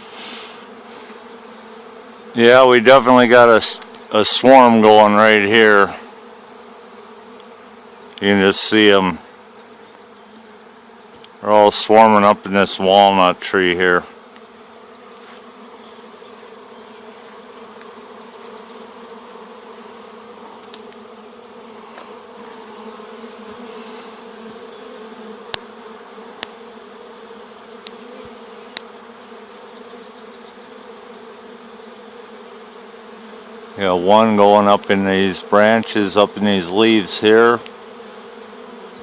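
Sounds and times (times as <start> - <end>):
bee swarm buzzing: 0.0 - 39.0.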